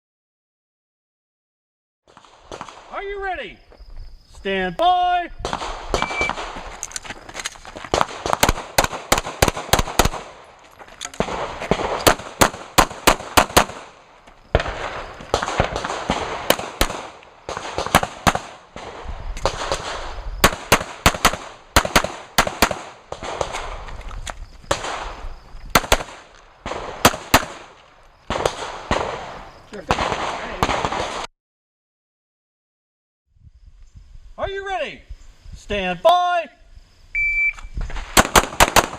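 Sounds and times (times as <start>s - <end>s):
shot timer beep: 6.0s - 6.4s, 37.2s - 37.7s.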